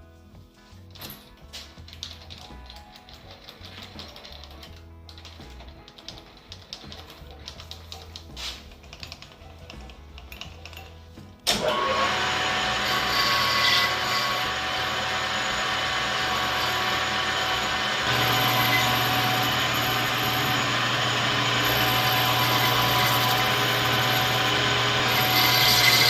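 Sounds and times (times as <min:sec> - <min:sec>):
lathe cutting metal: 0:11.5 - 0:26.0
metal lathe whine: 0:11.6 - 0:26.0.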